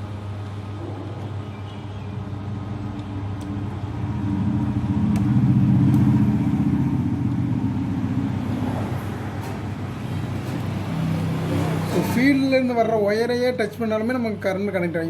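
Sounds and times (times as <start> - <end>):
steady low hum: 0.0 - 15.0
vehicle engine passing by: 3.5 - 12.4.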